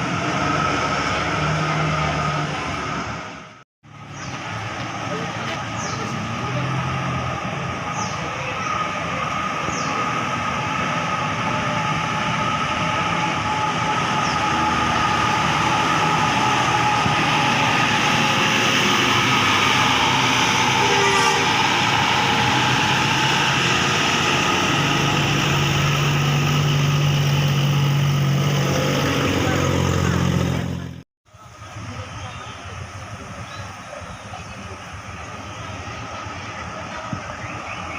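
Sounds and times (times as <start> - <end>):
bus engine running: 0.0 - 37.9
road noise: 0.0 - 37.9.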